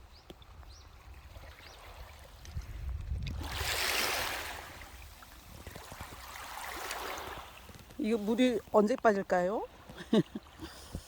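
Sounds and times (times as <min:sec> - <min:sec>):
wind rumble on microphone: 0:00.0 - 0:08.4
seawater washing onto shore: 0:03.3 - 0:08.7.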